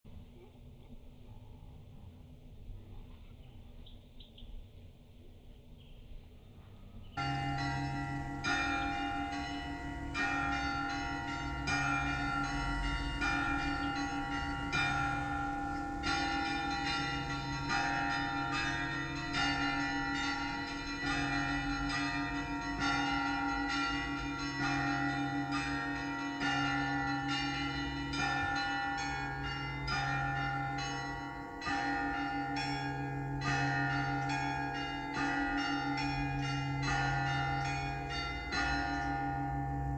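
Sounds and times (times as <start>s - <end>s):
deep bell striking: 7.2s - 39.9s
small high bells rhythmic: 7.2s - 39.9s.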